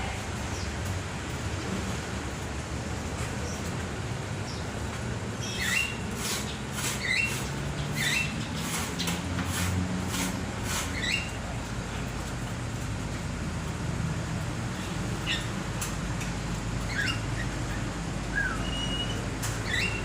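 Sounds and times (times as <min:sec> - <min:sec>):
bird chirping: 0:05.4 - 0:09.2, 0:14.8 - 0:15.6, 0:16.8 - 0:20.0.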